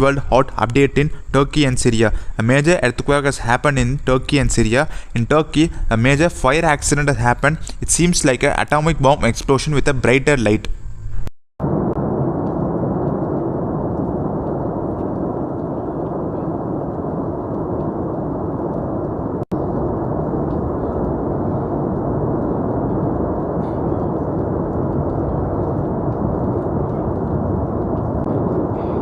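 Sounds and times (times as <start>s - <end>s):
steady low rumbling: 0.0s - 29.0s.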